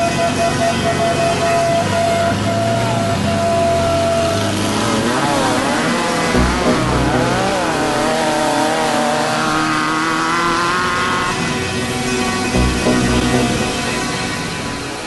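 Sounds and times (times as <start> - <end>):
race vehicle engine revving: 2.3 - 11.8, 12.5 - 15.0.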